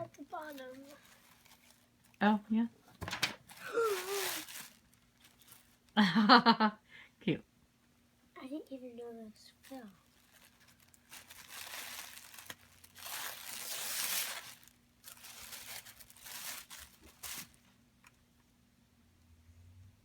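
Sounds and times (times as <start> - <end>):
packaging crinkling and tearing: 0.0 - 2.2, 3.0 - 5.9, 9.6 - 17.7.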